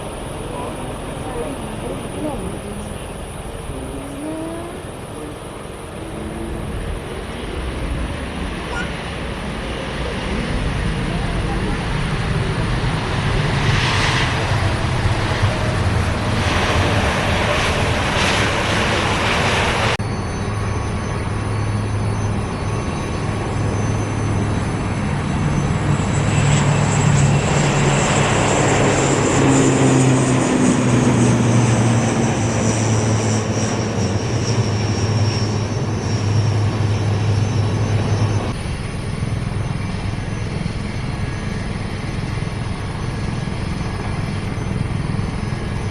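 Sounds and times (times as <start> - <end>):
airplane engines droning: 0.0 - 45.9
high engine whine: 0.0 - 45.9.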